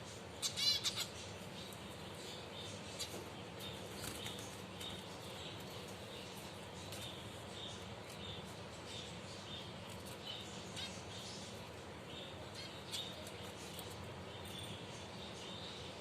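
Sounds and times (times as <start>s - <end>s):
finches chirping: 0.0s - 16.0s.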